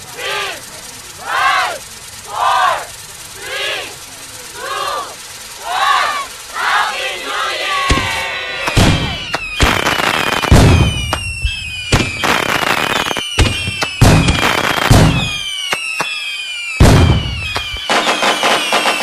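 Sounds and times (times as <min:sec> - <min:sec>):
falling firework whistles: 0:04.6 - 0:19.0
fireworks bangs: 0:05.1 - 0:19.0.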